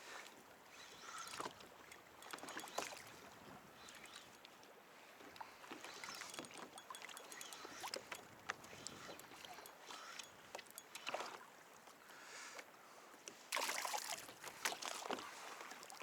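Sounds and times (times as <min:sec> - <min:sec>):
light clicks and ticks: 0:02.2 - 0:03.1, 0:06.0 - 0:11.2
water lapping and splashing: 0:13.4 - 0:16.0.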